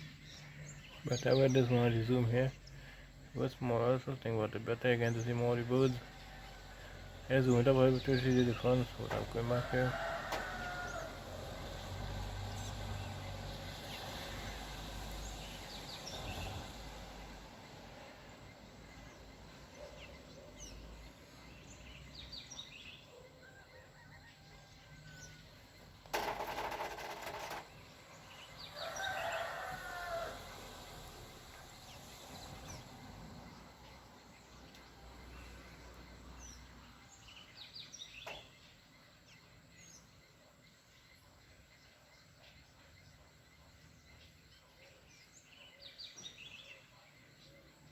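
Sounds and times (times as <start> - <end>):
faint outdoor ambience: 0.0 - 47.9
steady hiss: 28.7 - 33.9.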